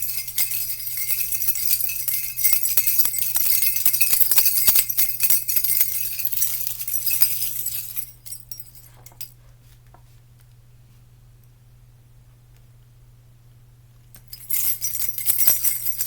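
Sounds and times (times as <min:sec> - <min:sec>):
jingle bells shaken: 0:00.0 - 0:09.3, 0:14.2 - 0:16.0
faint clinks: 0:00.0 - 0:09.4, 0:14.2 - 0:16.0.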